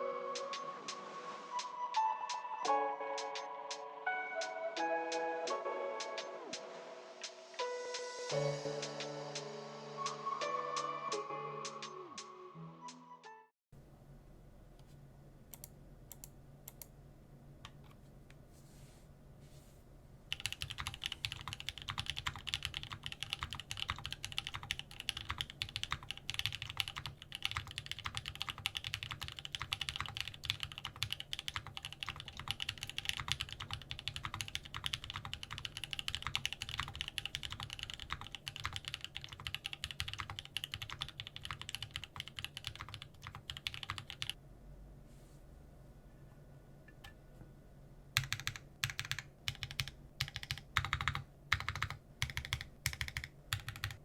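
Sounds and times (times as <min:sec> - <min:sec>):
mechanical keyboard typing: 0:20.3 - 0:44.4, 0:48.2 - 0:54.0.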